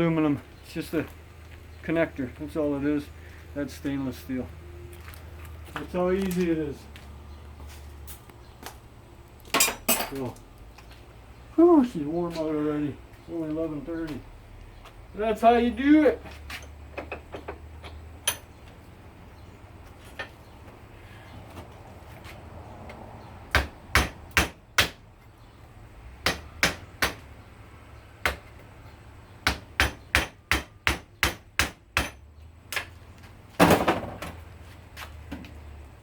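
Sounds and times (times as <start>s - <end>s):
hammer striking chisel on metal: 26.2s - 27.2s, 29.4s - 32.2s.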